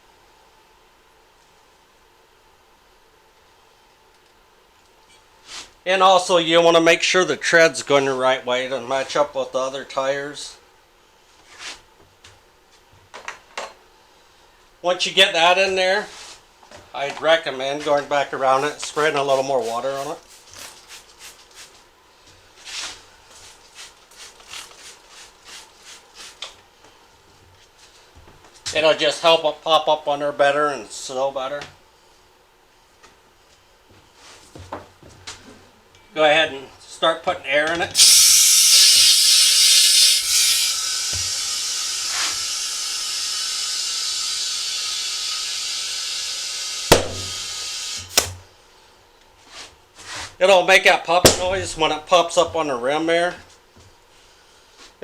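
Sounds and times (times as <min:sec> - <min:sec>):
spray bottle hissing: 0:38.0 - 0:40.6
compressed air hissing into tire: 0:38.0 - 0:48.4
tire bead popping onto rim: 0:46.9 - 0:47.4.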